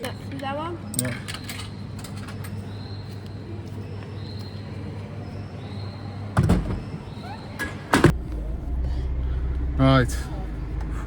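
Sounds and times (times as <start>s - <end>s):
car doors shutting: 6.3s - 8.4s.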